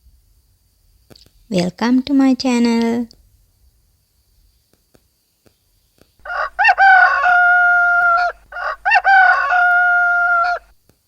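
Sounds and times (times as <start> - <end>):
rooster crowing: 6.2 - 10.8.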